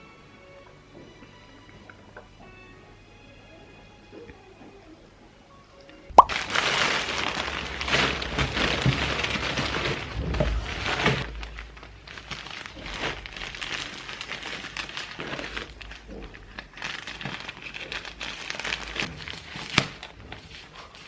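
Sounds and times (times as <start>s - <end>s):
sharp pop: 6.1s - 6.4s
rustling and crinkling: 6.3s - 21.0s.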